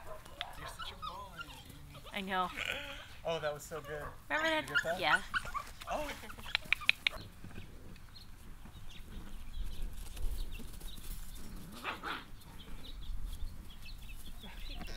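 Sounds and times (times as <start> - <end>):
puppies squeaking and whimpering: 0.4 - 3.1, 3.7 - 7.3
puppy whining: 0.4 - 3.1, 3.8 - 7.3.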